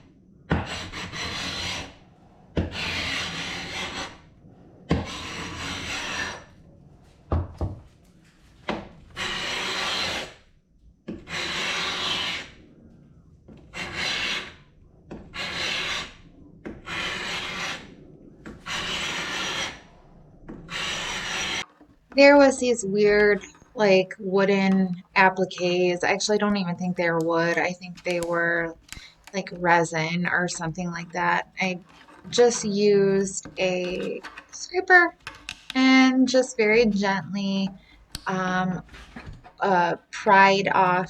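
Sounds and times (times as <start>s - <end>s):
scraper rasping on wood: 0.5s - 2.0s, 2.6s - 4.2s, 4.9s - 6.5s, 9.2s - 10.4s, 11.3s - 12.6s, 13.7s - 14.6s, 15.3s - 16.2s, 16.9s - 17.9s, 18.6s - 19.8s, 20.7s - 36.0s
scraper blade knocking: 20.9s - 36.1s.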